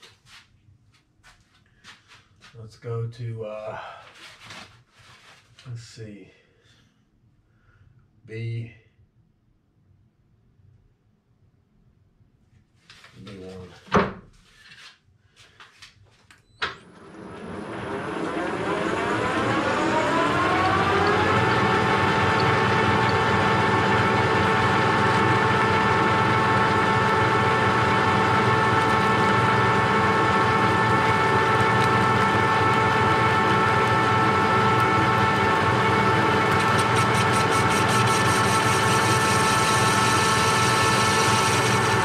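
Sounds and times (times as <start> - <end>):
metal lathe whining: 16.8 - 42.0.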